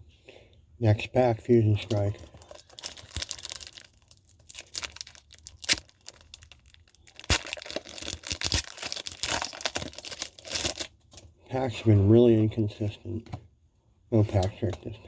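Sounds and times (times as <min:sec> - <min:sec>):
foil wrapper tearing and crinkling: 0:01.8 - 0:10.9.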